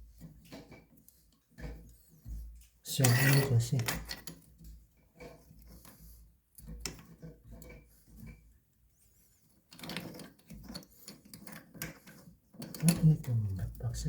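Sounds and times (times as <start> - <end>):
plastic parts clicking: 9.8 - 13.3.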